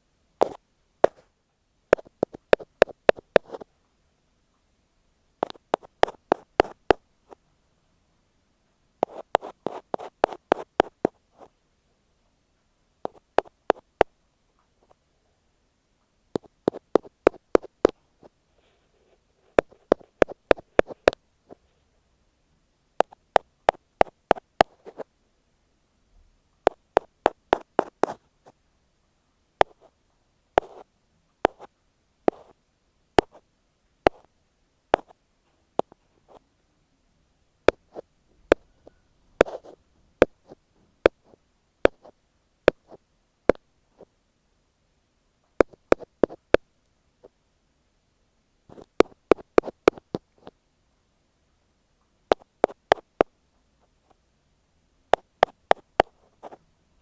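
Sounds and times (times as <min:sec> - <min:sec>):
ear pick tapping microphone: 0:00.4 - 0:01.3, 0:01.9 - 0:03.7, 0:05.4 - 0:07.4, 0:09.0 - 0:11.5, 0:16.4 - 0:18.0, 0:19.5 - 0:21.2, 0:23.0 - 0:25.0, 0:30.6 - 0:30.8, 0:32.3 - 0:32.6, 0:34.0 - 0:34.3, 0:34.9 - 0:35.1, 0:37.7 - 0:44.1, 0:45.5 - 0:46.6, 0:48.7 - 0:50.5, 0:52.3 - 0:53.3.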